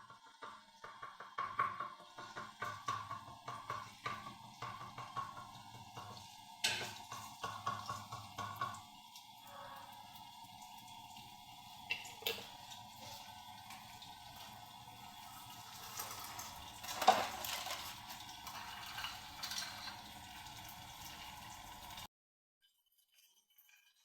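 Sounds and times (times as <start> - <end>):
tap water running: 0.0 - 22.1.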